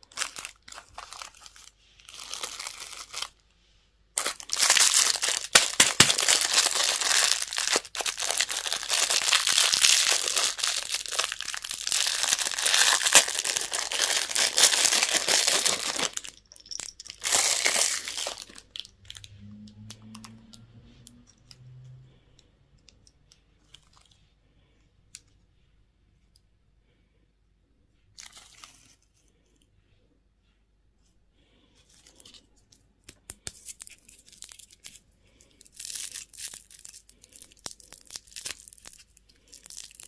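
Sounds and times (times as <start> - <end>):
candy wrapper crinkling and tearing: 0.0 - 3.4, 4.2 - 19.3, 33.0 - 40.0.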